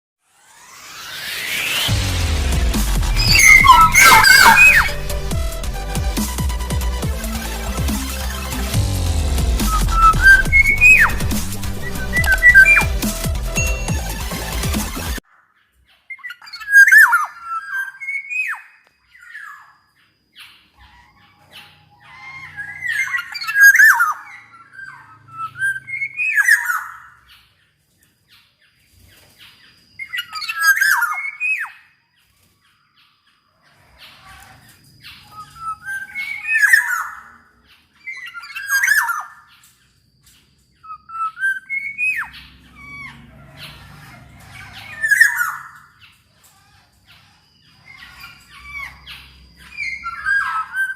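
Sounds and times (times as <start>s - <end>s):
bird whistling song: 3.0s - 14.6s, 16.1s - 27.5s, 29.4s - 32.0s, 35.0s - 39.6s, 40.8s - 46.2s, 47.1s - 50.9s.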